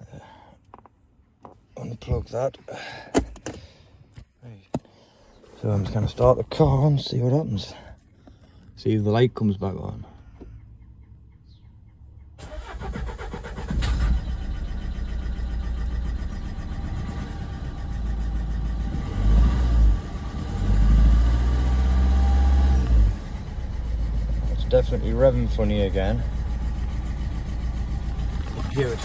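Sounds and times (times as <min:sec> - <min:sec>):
diesel engine starting and revving: 0:12.4 - 0:29.0.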